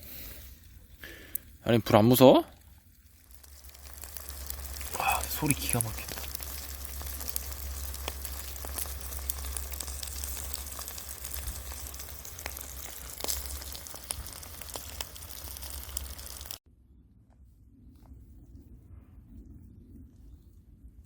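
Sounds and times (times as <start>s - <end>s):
chicken sizzling over fire: 0.0s - 16.6s
wood fire crackling: 0.0s - 16.6s.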